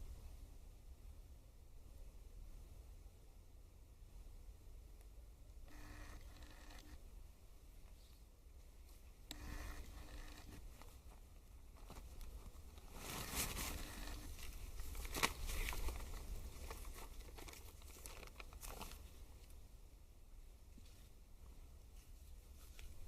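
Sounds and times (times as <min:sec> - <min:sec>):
paper crackling and rustling: 0:10.0 - 0:19.5.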